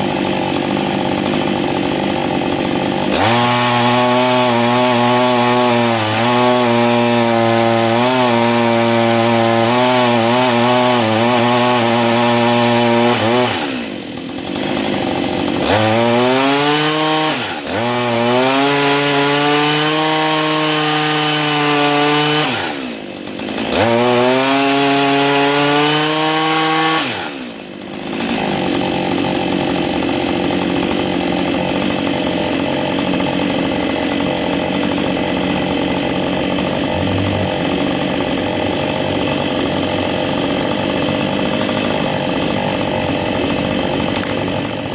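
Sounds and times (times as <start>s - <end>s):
chainsaw engine running hard: 0.0s - 44.9s.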